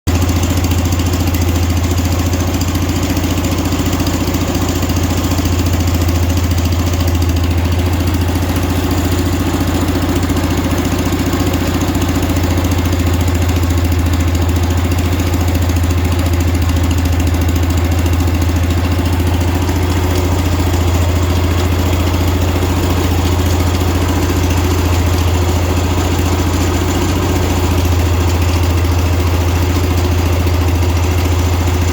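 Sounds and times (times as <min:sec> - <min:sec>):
engine idling: 0:00.1 - 0:31.9.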